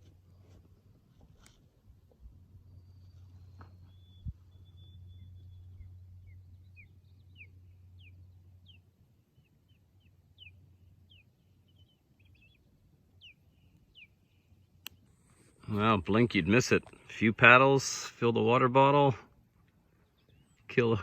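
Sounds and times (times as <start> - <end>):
low hum: 0.0 - 18.7
bird chirping: 2.5 - 17.8, 19.6 - 21.0.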